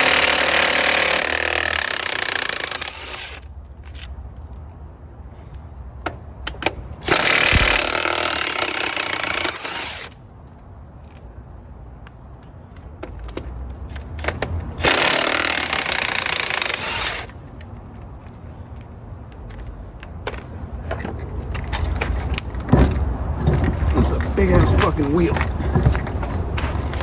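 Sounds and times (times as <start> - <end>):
impact wrench hammering: 7.1 - 9.7.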